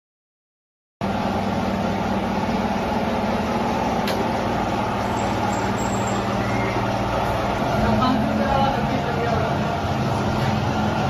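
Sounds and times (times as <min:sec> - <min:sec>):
factory machinery droning: 0:01.0 - 0:11.0
sharp click: 0:04.0 - 0:04.3.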